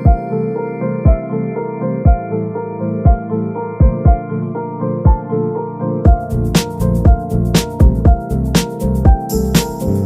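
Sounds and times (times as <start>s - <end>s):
deep beat: 2.1s - 2.3s, 3.8s - 4.2s, 6.1s - 10.0s.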